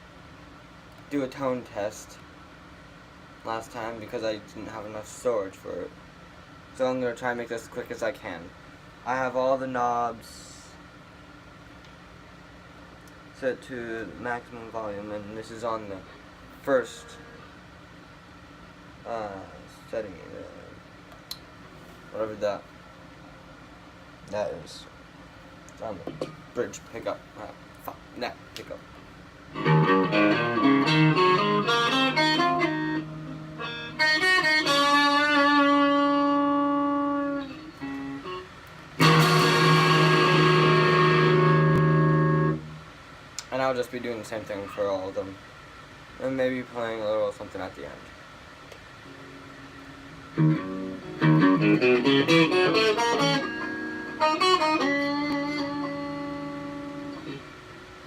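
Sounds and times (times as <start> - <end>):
electric guitar notes and chords: 29.5 - 42.9, 49.0 - 58.0.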